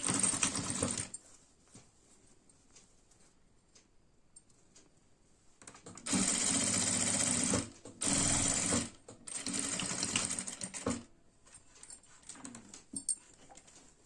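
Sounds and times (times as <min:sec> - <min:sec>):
sewing machine stitching: 0:00.0 - 0:01.1, 0:05.9 - 0:11.1.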